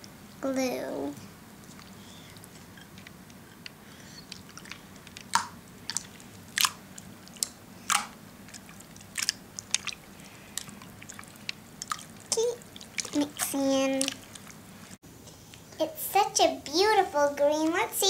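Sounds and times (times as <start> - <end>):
slime squelching and clicking: 1.6 - 10.0, 10.6 - 14.6.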